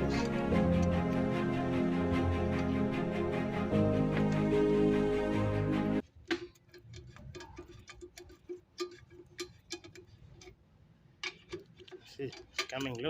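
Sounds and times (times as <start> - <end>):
background music: 0.0 - 6.0.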